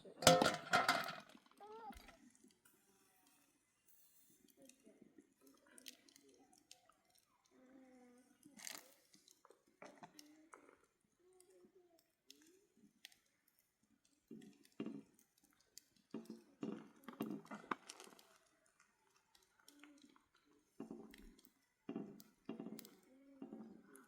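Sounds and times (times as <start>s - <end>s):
faint broken-up voices: 4.4s - 13.0s, 21.9s - 24.0s
small clicks and knocks: 12.0s - 24.0s.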